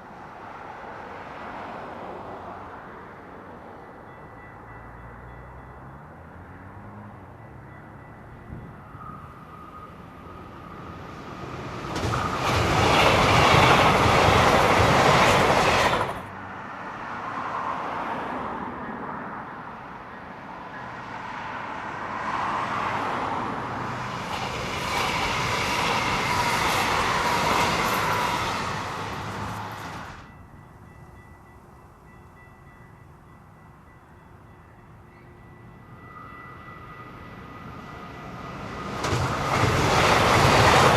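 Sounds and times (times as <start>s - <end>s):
train wheels clattering on rails: 11.4s - 16.3s, 24.0s - 31.1s, 38.6s - 40.9s.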